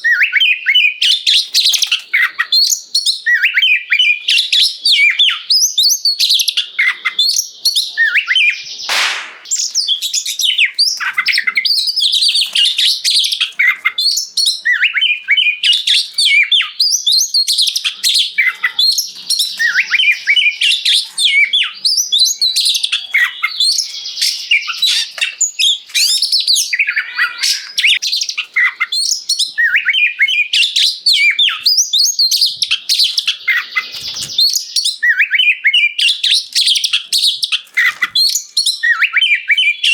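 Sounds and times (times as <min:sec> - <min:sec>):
bird singing whistles and trills: 0:00.0 - 0:08.9, 0:09.5 - 0:39.9
harsh bird call: 0:23.0 - 0:28.0.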